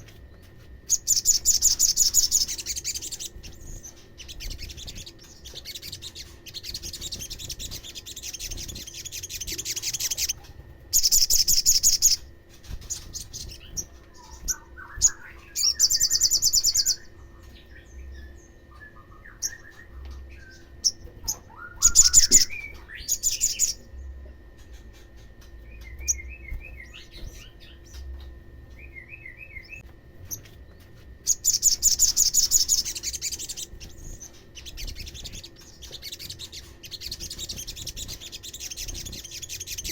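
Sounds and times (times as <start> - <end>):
bird twittering chirps: 0.8 - 39.9
bird trilling: 0.9 - 23.9, 31.2 - 39.9.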